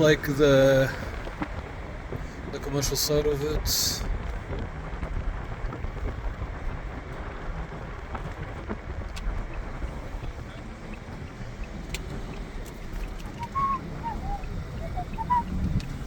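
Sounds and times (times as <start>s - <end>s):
car road noise: 0.0s - 16.0s
wind on microphone: 3.9s - 16.0s
faint ticks: 8.1s - 16.0s.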